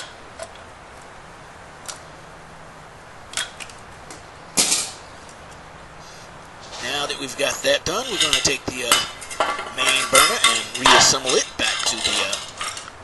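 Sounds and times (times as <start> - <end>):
clatter of metal parts: 6.6 - 13.0
metal parts clicking: 8.1 - 13.0.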